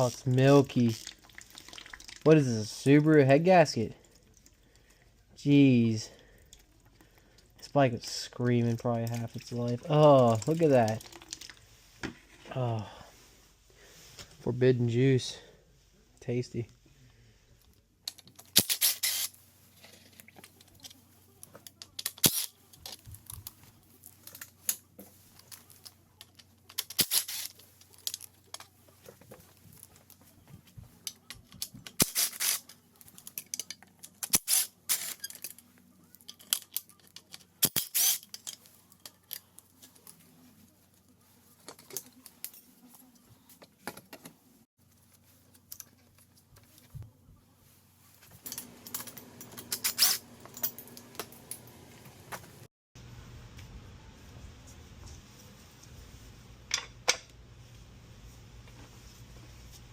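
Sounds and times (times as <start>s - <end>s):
tools and metal parts clinking: 8.8s - 11.6s, 18.0s - 30.0s, 30.9s - 40.2s, 41.6s - 44.3s, 48.2s - 51.8s, 56.7s - 57.3s.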